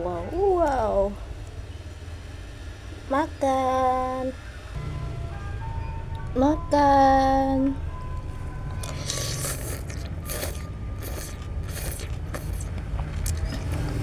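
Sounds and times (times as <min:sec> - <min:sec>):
steady low hum: 0:00.0 - 0:14.0
person chewing food: 0:08.7 - 0:13.8.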